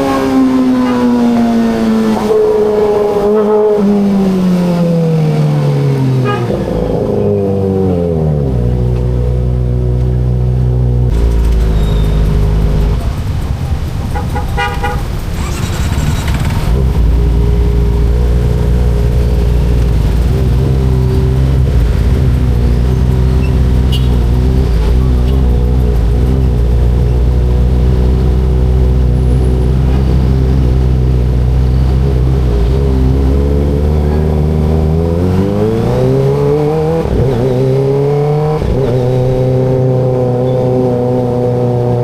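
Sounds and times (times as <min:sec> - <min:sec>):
vehicle horn toot: 0:06.2 - 0:06.6, 0:14.1 - 0:15.6, 0:23.9 - 0:24.3
motorcycle engine winding down: 0:15.2 - 0:18.7.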